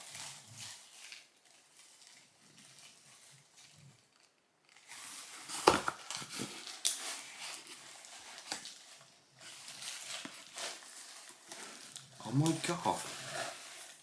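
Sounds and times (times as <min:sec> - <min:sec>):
shredded paper rustling: 0:04.9 - 0:14.0.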